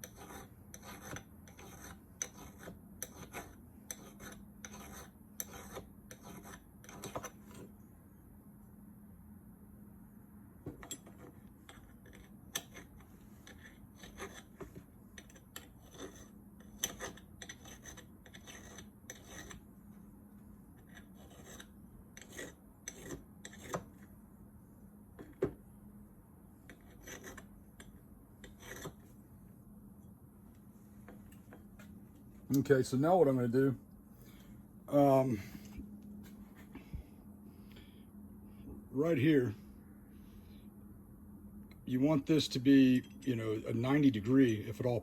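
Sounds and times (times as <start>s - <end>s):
file scraping metal: 0.0s - 7.7s, 11.2s - 19.6s, 20.8s - 24.0s, 26.7s - 29.1s
steady low hum: 0.0s - 45.0s.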